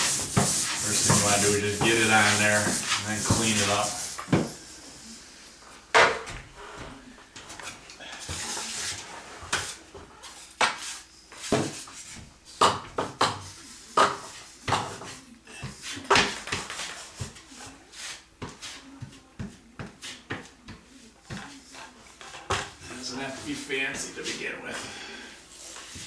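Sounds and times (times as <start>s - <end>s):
drywall knife scraping compound: 0.0s - 4.6s, 7.6s - 12.2s.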